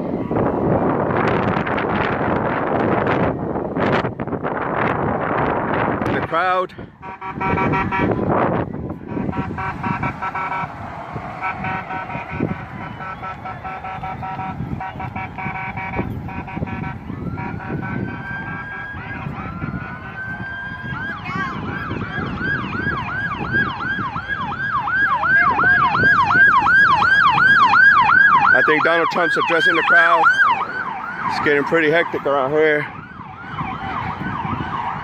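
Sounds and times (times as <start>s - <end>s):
crowd hubbub: 6.8s - 32.9s
horn blasts: 7.0s - 20.4s
siren wailing and yelping: 7.0s - 35.0s.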